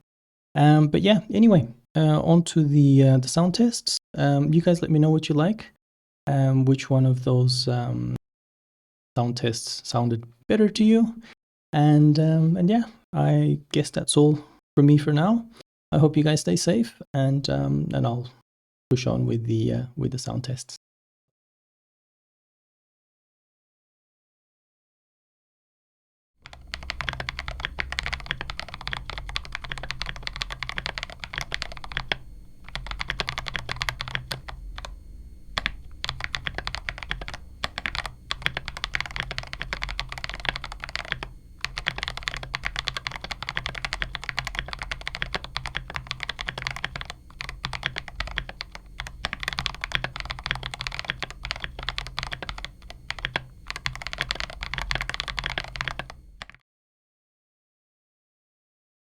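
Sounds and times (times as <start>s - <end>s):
typing on mechanical keyboard: 26.4s - 56.6s.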